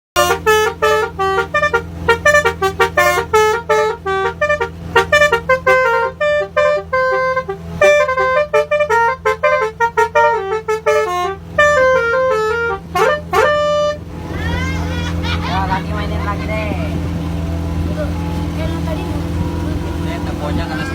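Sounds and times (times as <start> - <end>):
musical horn melody: 0.2 - 14.2.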